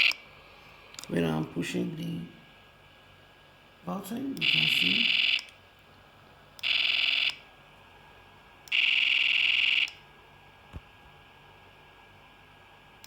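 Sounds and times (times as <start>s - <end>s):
harsh high buzzing tone: 0.0s - 0.2s, 3.9s - 5.5s, 6.6s - 7.4s, 8.7s - 10.0s.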